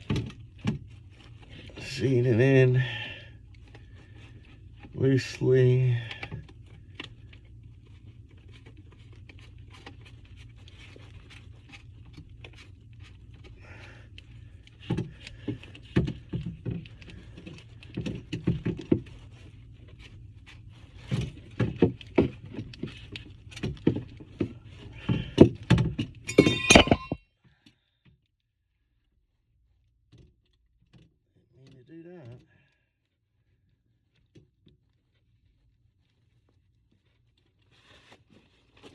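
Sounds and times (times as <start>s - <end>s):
drain parts clicking and rattling: 21.0s - 27.2s.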